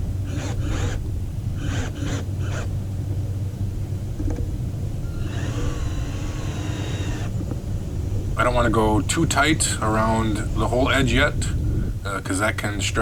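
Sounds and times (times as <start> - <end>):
steady low rumble: 0.0 - 13.0
cordless drill driving screw: 0.2 - 1.0, 1.6 - 2.7, 5.1 - 7.4.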